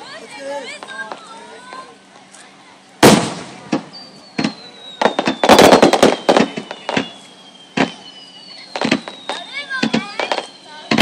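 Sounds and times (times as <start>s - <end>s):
fireworks crackling: 0.0s - 11.0s
fireworks bangs: 3.0s - 11.0s
high descending whistle: 3.9s - 11.0s.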